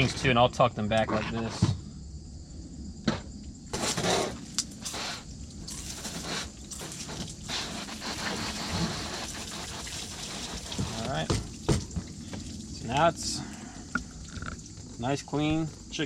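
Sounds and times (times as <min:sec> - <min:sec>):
steady hiss: 0:03.6 - 0:16.0
wet squishing and scraping: 0:03.7 - 0:15.0.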